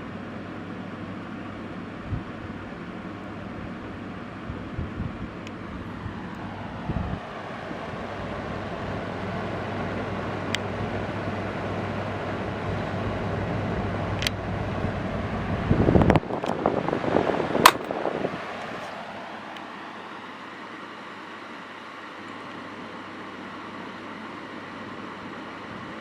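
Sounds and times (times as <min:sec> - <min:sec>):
table fan running: 0:00.0 - 0:26.0
sharp clicks: 0:17.7 - 0:17.9.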